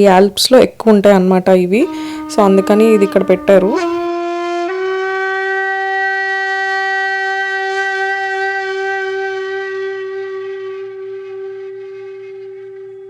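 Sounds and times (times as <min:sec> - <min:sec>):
alphorn long steady note: 0:01.7 - 0:13.0.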